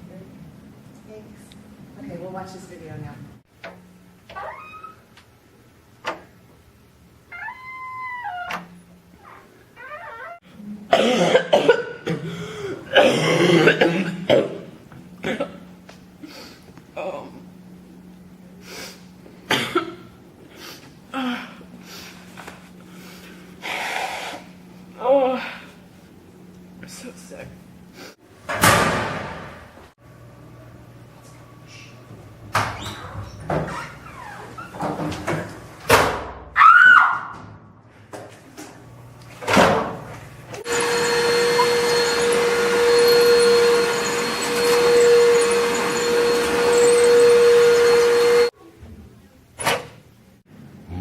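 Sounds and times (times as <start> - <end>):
voiced gasp: 12.1 - 12.9
person sniffling and breathing heavily: 16.2 - 16.7, 18.6 - 19.1
electric motor whirring: 40.6 - 48.5.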